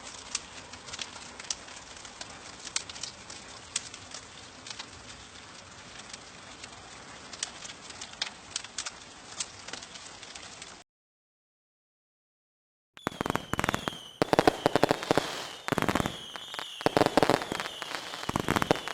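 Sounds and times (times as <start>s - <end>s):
fireworks crackling: 13.0s - 18.9s.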